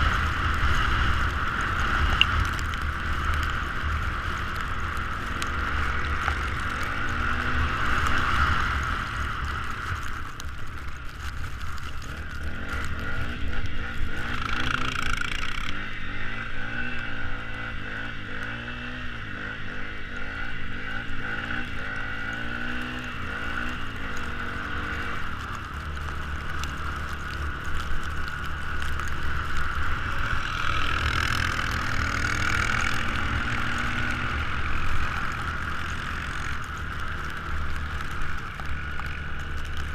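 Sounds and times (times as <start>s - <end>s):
small engine revving: 12.4s - 25.3s, 30.2s - 36.7s.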